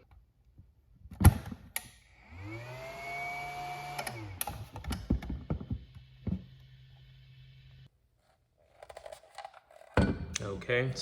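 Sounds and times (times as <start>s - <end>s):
battery charger whine: 2.2s - 7.9s.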